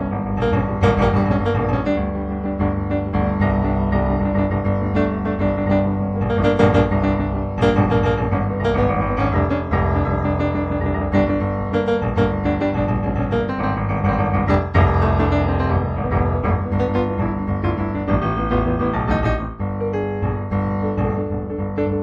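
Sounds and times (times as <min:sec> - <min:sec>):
solo piano music: 0:00.0 - 0:22.0.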